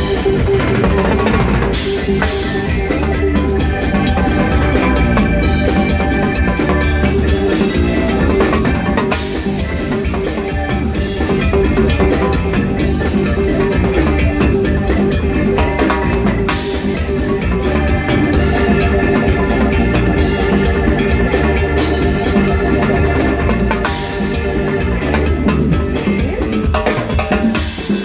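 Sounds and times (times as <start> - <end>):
drums and percussion hits: 0.0 - 28.0
rock band playing: 0.0 - 28.0.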